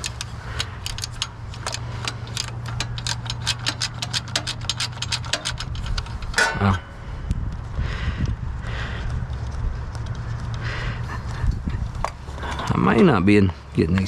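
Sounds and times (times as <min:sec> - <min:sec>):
ratchet wrench clicking: 0:00.0 - 0:06.8
low hum: 0:00.0 - 0:13.8.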